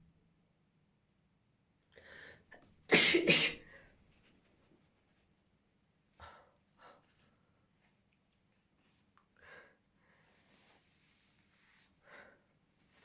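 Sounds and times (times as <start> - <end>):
person sneezing: 2.9 - 3.6.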